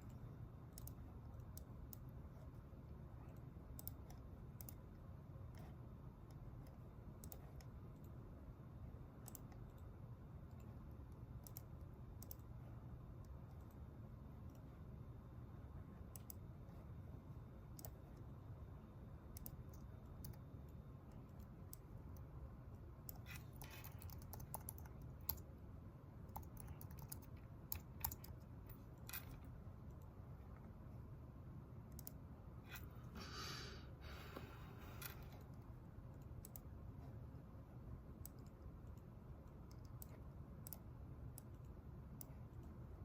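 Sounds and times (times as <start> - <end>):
low room hum: 0.0 - 43.0
typing on a keyboard: 3.2 - 4.9, 23.0 - 25.5, 26.2 - 30.0.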